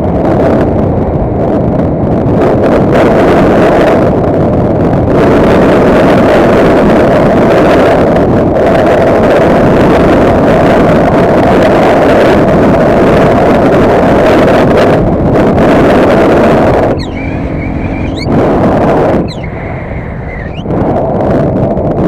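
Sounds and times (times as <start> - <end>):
wind rush on microphone: 0.0 - 22.0
vehicle engine running: 15.0 - 20.7.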